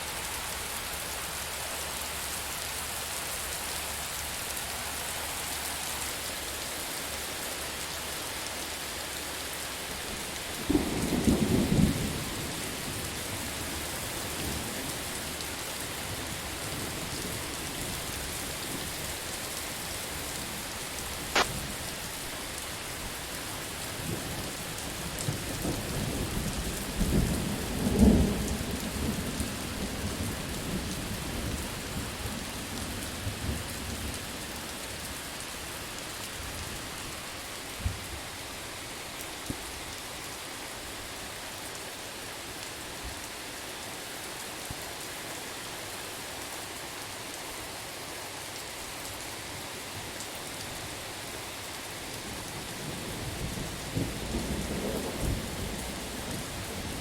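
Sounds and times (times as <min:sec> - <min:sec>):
heavy rain hissing: 0:00.0 - 0:42.8.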